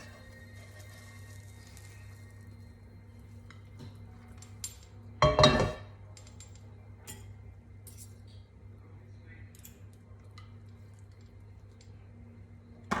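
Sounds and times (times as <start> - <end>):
low steady hum: 0.0 - 13.0
dishes and utensils clinking: 3.5 - 8.3
loud ringing clang: 5.2 - 5.8.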